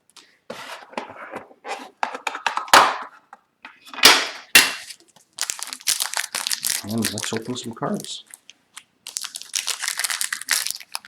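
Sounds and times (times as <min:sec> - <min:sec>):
rustling and scraping packaging: 0:00.2 - 0:04.1, 0:04.7 - 0:11.0
loud ripping: 0:04.8 - 0:08.4, 0:09.1 - 0:11.0.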